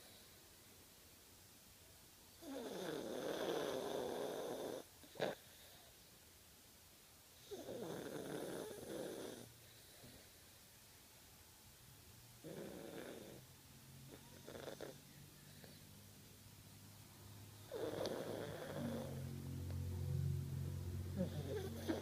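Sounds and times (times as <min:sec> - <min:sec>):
dog snoring: 0:02.4 - 0:05.7, 0:07.4 - 0:10.2, 0:12.4 - 0:13.5, 0:14.1 - 0:15.9, 0:17.6 - 0:19.4, 0:21.1 - 0:22.0.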